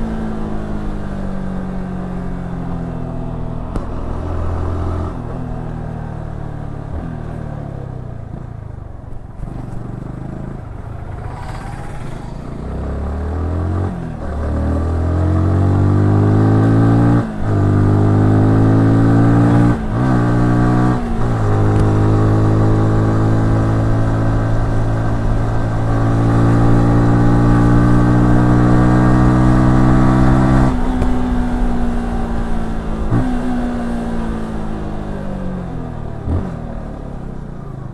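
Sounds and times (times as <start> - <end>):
motorcycle upshifts: 9.3 - 15.4
motorcycle engine revving: 9.4 - 37.9.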